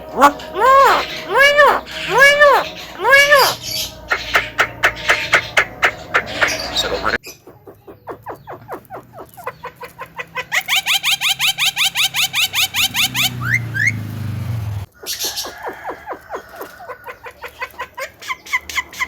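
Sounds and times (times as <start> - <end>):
myna calling harsh notes: 0.0 - 7.2.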